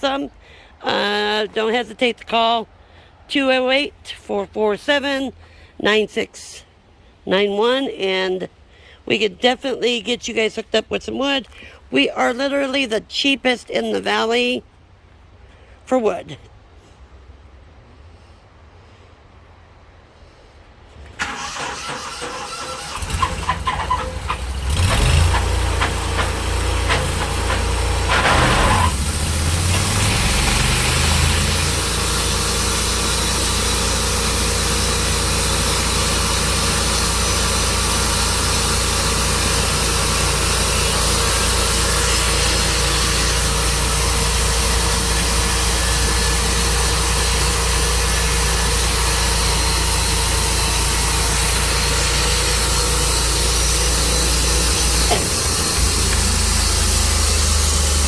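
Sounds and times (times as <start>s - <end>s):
gasoline engine starting and revving: 21.2s - 58.0s.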